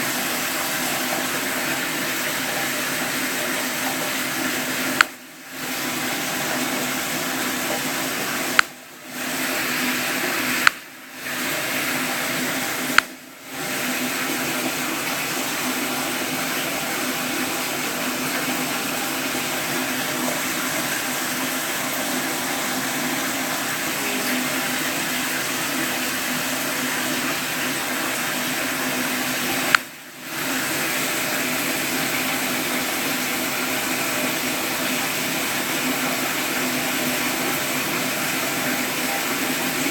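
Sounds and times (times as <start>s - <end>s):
rushing water: 0.0s - 39.9s
sharp click: 8.5s - 8.8s, 10.6s - 10.9s, 12.9s - 13.2s, 29.7s - 29.9s.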